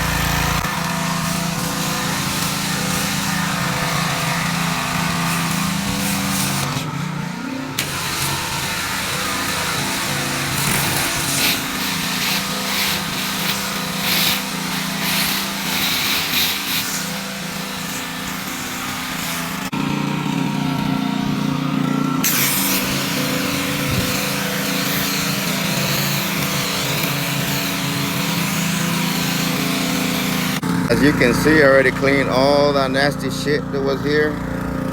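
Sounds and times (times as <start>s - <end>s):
water spray hissing: 0.0s - 6.8s, 7.8s - 19.7s
pressure washer engine humming: 0.0s - 34.9s.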